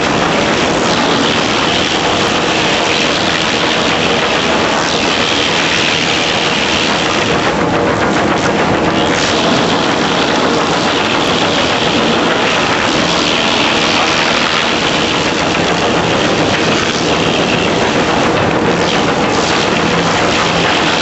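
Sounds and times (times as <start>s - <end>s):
wood chipper running: 0.0s - 21.0s.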